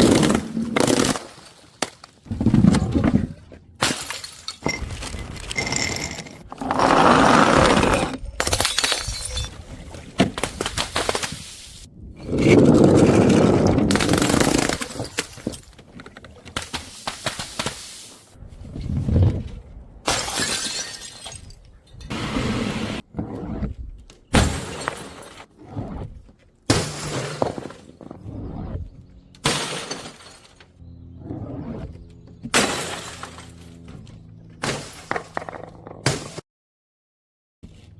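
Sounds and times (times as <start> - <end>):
glass bottles smashing: 3.8 - 6.4, 8.4 - 9.7, 20.1 - 22.1, 24.4 - 25.5, 26.7 - 28.0, 29.4 - 30.6
glass shards tinkling: 8.6 - 9.6.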